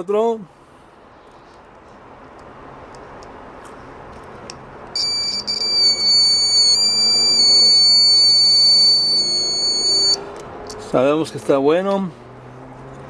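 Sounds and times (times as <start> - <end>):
high steady buzzer beep: 5.0 - 10.2.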